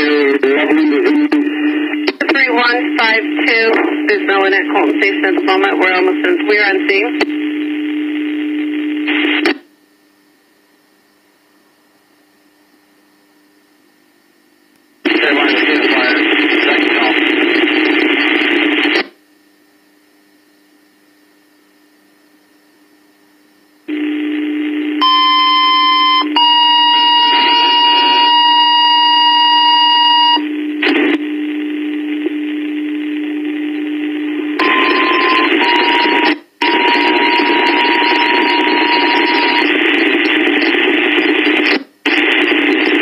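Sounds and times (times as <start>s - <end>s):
loud radio static hiss: 0.0s - 8.3s, 9.0s - 9.7s, 15.0s - 19.2s, 27.2s - 28.5s, 30.2s - 43.0s
two-tone radio page: 0.0s - 9.7s, 15.0s - 19.2s, 23.9s - 43.0s
radio channel hum: 0.0s - 13.9s, 14.5s - 43.0s.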